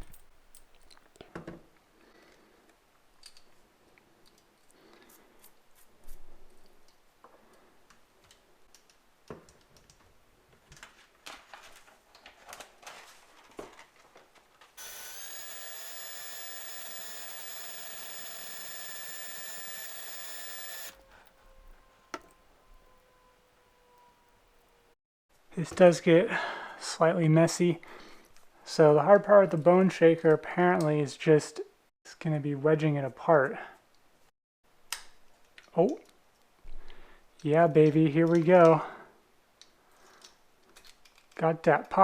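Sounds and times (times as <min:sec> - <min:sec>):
small power drill whining: 0:14.8 - 0:24.7.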